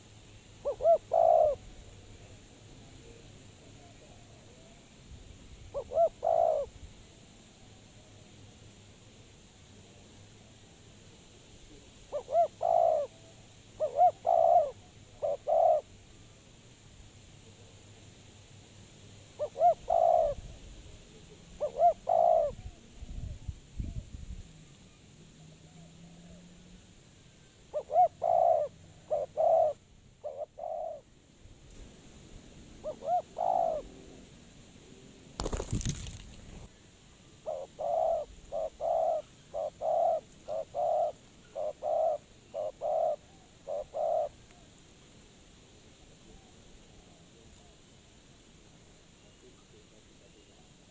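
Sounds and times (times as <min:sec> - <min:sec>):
dove cooing: 0:00.6 - 0:01.7, 0:05.7 - 0:06.8, 0:12.1 - 0:13.2, 0:13.8 - 0:15.9, 0:19.4 - 0:20.5, 0:21.6 - 0:22.8, 0:27.7 - 0:31.1, 0:32.8 - 0:34.2, 0:37.4 - 0:44.4.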